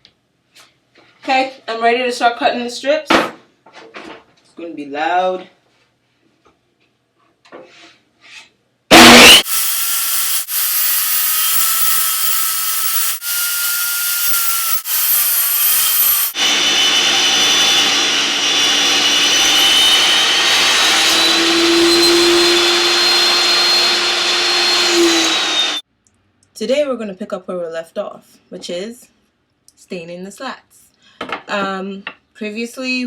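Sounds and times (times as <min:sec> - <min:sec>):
table saw ripping a board: 0:08.9 - 0:25.8.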